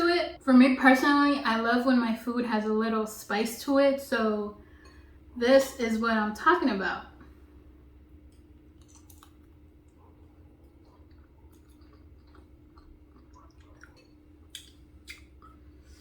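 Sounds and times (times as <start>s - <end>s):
low steady hum: 0.0s - 16.0s
faint chewing: 8.2s - 16.0s
wet mouth clicks: 8.8s - 10.0s, 10.7s - 15.6s.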